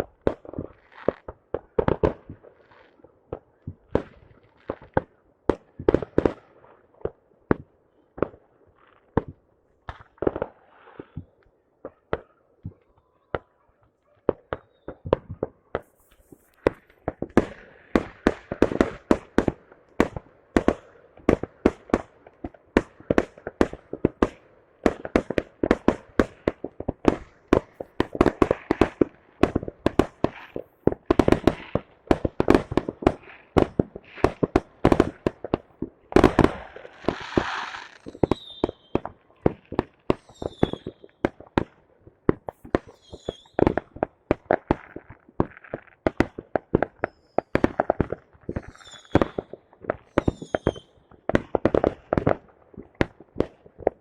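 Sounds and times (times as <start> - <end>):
fireworks bangs: 14.2 - 54.0
fireworks hissing crackle: 15.8 - 19.1, 26.0 - 41.3.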